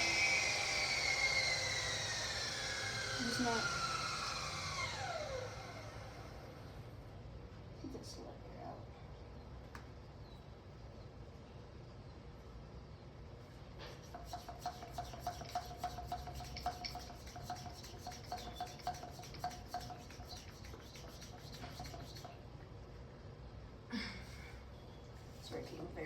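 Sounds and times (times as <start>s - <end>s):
bicycle pump squeaky hiss: 14.0s - 22.4s.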